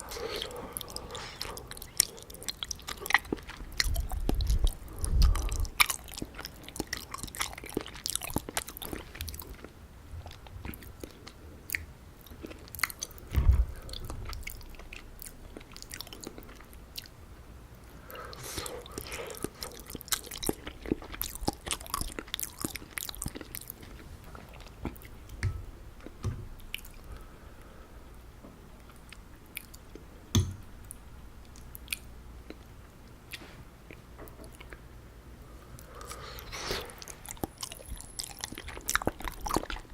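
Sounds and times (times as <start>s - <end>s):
wet sticky chewing: 0.0s - 13.2s, 18.3s - 25.4s, 35.8s - 39.9s
low thumps: 13.3s - 14.3s.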